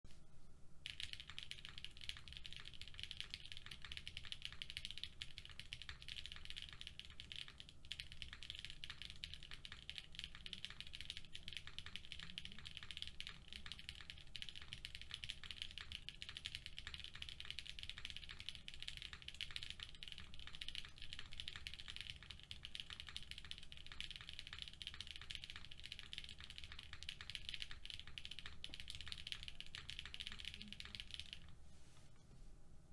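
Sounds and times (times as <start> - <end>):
rapid mechanical keyboard typing: 0.8 - 31.6.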